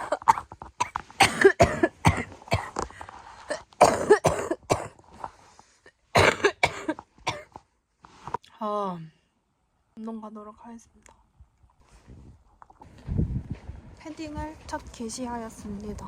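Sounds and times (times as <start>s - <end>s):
woman coughing hard: 0.0s - 2.8s, 3.5s - 5.0s, 6.1s - 7.5s.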